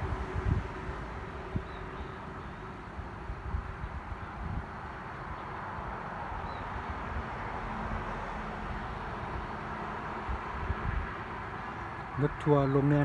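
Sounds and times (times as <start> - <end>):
wind on microphone: 0.0 - 2.3, 2.9 - 4.9, 10.2 - 11.5.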